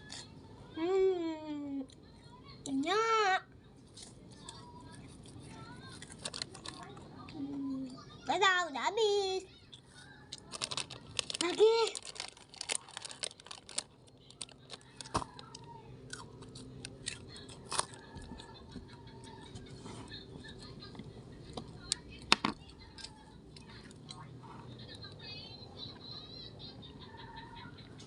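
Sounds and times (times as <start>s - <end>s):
crunchy biscuit chewing: 3.9s - 7.0s, 9.8s - 25.1s.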